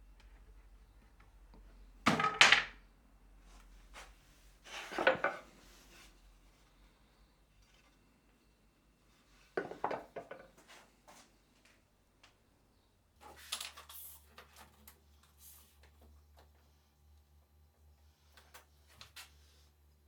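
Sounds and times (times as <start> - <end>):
objects clattering: 2.1 - 2.8, 4.7 - 5.5, 9.6 - 10.6.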